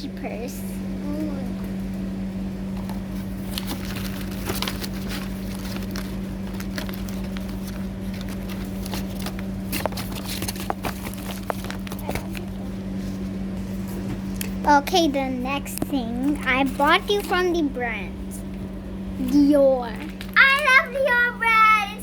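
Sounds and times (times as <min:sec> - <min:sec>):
steady low hum: 0:00.0 - 0:22.0
packaging clicks and rustles: 0:03.3 - 0:12.6.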